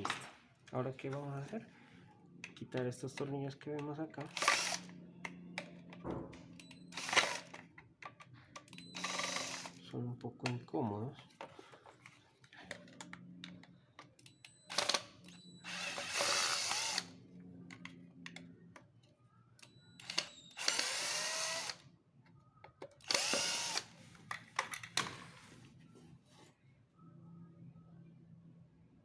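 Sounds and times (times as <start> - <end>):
small clicks and handling noise: 2.3 - 9.4, 10.4 - 15.4, 17.6 - 20.7
cordless drill running: 4.3 - 5.0, 6.9 - 7.6, 8.8 - 9.8, 14.7 - 17.2, 20.0 - 21.8, 23.0 - 24.0.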